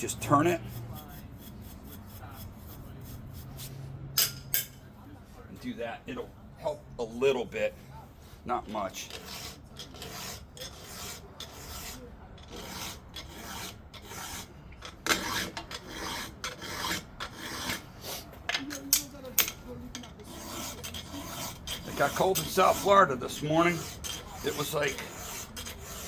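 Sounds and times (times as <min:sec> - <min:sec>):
hand file rasping on chain: 0:00.0 - 0:03.8, 0:09.0 - 0:18.4, 0:19.0 - 0:26.0.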